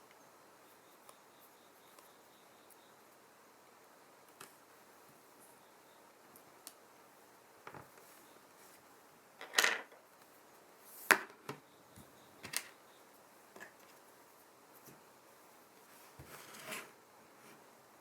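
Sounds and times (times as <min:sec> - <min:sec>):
tool scraping work surface: 0:16.2 - 0:16.9.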